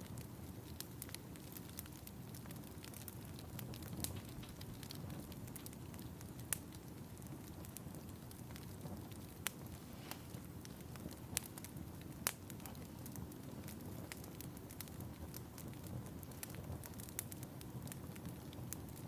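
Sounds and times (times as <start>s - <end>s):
fire crackling: 0.0s - 19.0s.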